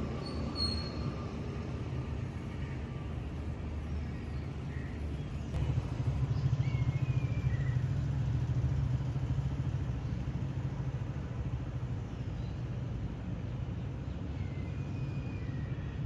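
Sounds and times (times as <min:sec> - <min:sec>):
vehicle engine idling: 0:05.3 - 0:12.6.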